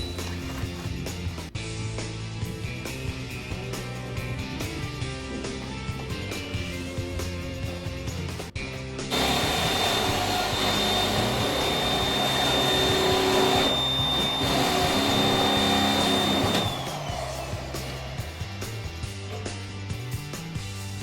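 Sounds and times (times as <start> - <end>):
background music: 0.0 - 21.0
electric motor whining: 9.1 - 18.1.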